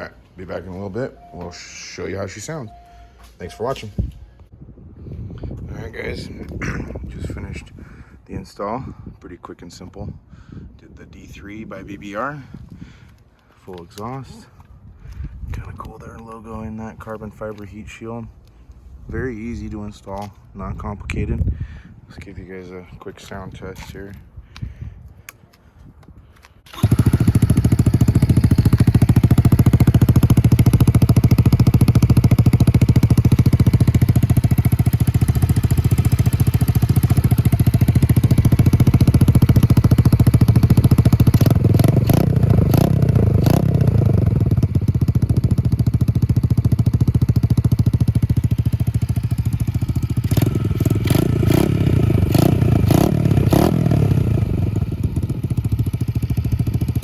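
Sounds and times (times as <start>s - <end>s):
motorcycle engine idling and revving: 26.6s - 57.0s.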